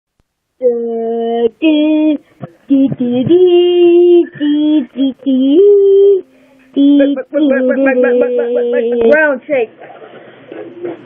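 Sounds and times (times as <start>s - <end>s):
high voice singing held notes: 0.6s - 8.7s.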